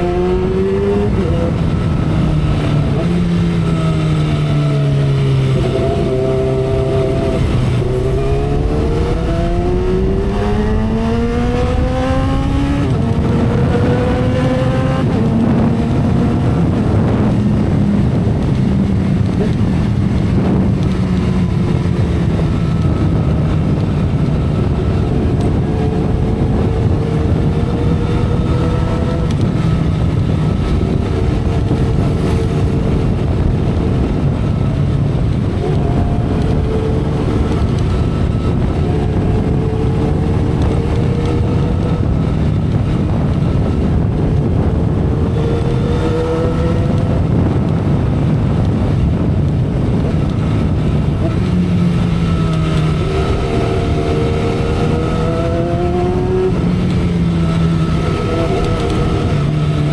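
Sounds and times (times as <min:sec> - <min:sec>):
motorcycle engine running: 0:00.0 - 0:59.9
wind noise on microphone: 0:00.0 - 0:59.9.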